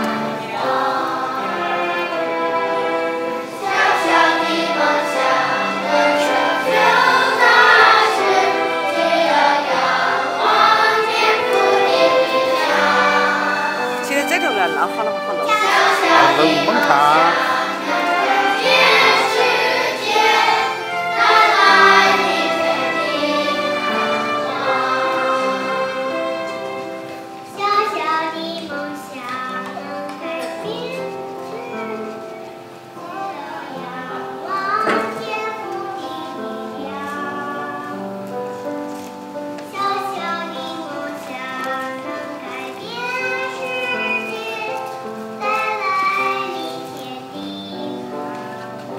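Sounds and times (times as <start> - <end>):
children's choir singing: 0.0 - 48.9
light musical accompaniment: 0.0 - 48.9.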